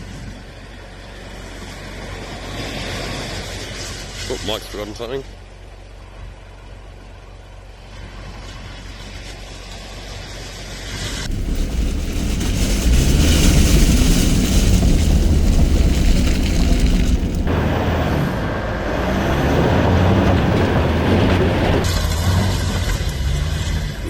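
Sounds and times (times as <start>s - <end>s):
loud rushing noise: 11.3s - 21.6s
engine revving: 11.3s - 24.0s.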